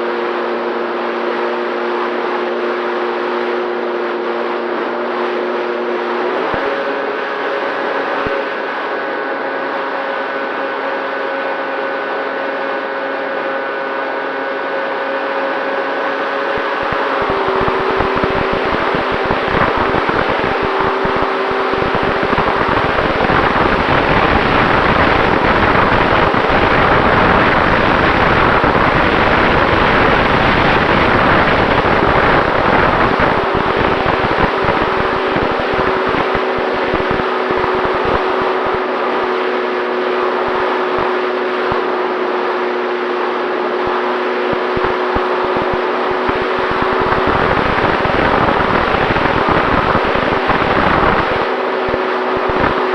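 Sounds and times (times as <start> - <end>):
electric motor hum: 16.0 - 42.0, 43.4 - 52.9
wind rushing over airframe: 16.4 - 39.4, 43.8 - 52.9.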